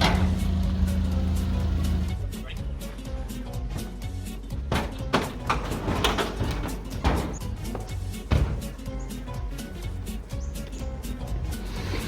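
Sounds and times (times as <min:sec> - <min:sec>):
heavy hits: 0:04.8 - 0:11.6.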